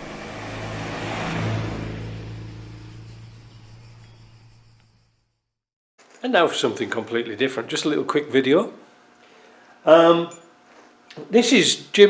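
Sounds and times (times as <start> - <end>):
vehicle engine running: 0.0 - 4.2.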